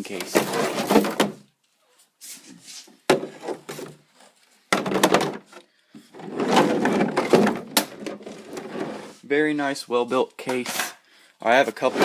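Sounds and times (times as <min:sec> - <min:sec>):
case rubbing and scraping: 0:00.2 - 0:01.2, 0:06.2 - 0:09.3, 0:11.8 - 0:12.0.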